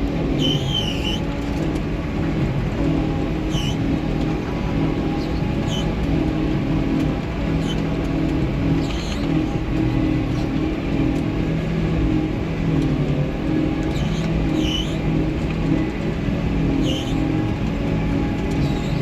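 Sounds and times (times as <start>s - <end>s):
large diesel engine running: 0.0s - 19.0s
short high squeaks: 0.4s - 1.3s, 3.5s - 4.0s, 5.2s - 6.0s, 13.9s - 15.0s, 16.8s - 17.4s.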